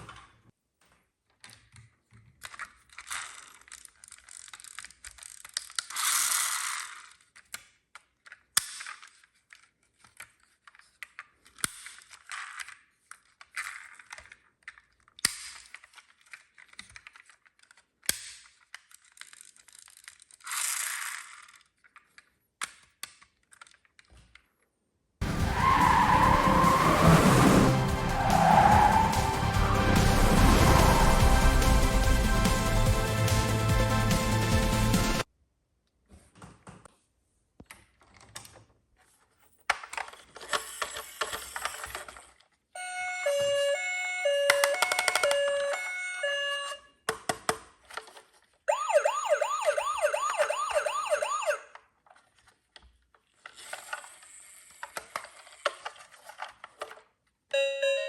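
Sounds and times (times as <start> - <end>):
background music: 25.2 - 35.2.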